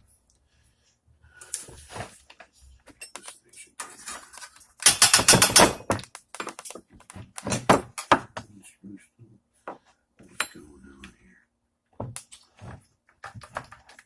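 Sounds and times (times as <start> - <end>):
rapid clicks and knocks: 4.8 - 8.2.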